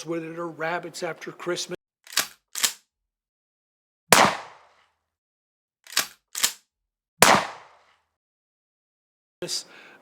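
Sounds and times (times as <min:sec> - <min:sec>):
rifle pump clicks: 0:02.0 - 0:02.8, 0:05.8 - 0:06.6
rifle gunshots: 0:04.1 - 0:04.7, 0:07.2 - 0:07.8.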